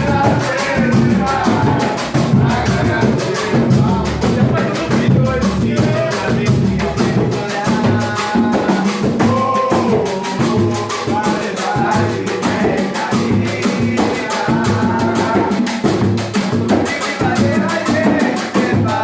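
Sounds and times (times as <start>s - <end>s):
music with shakers and drums: 0.0s - 19.0s.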